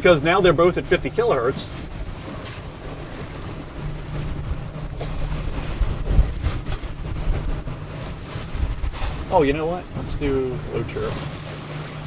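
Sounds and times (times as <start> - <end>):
low steady hum: 0.0 - 12.0
wind rumbling on microphone: 0.0 - 12.0.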